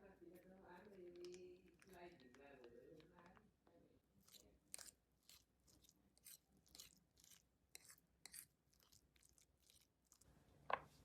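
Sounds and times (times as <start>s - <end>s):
person chewing crunchy food: 4.2s - 10.3s.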